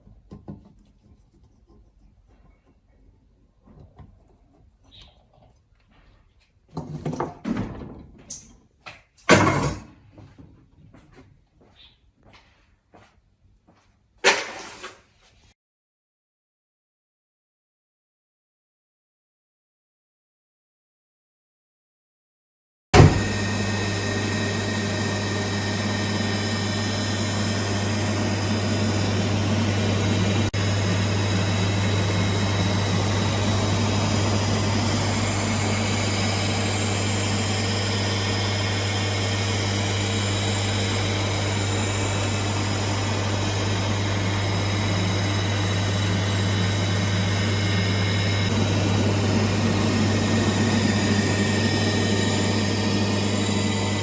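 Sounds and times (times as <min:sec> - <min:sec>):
water pump motor hum: 0:23.0 - 0:54.0.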